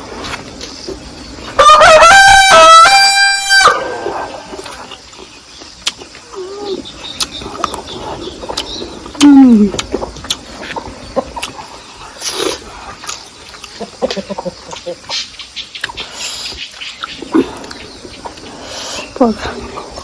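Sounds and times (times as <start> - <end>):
rooster crowing: 1.6 - 4.5.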